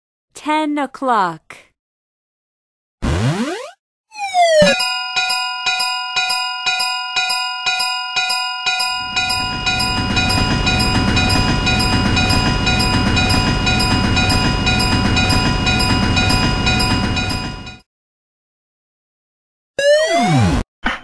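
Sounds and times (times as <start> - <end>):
level crossing warning bell: 4.6 - 17.8
train rumbling past: 9.0 - 17.7.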